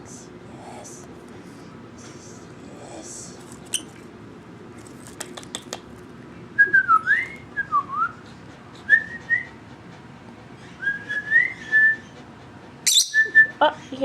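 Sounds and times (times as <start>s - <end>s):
bird whistling: 12.9s - 13.5s.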